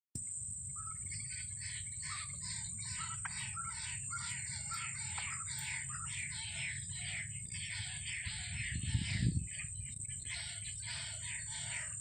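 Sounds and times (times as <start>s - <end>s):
steady high-pitched whine: 0.2s - 12.0s
bird harsh repeated calls: 0.6s - 12.0s.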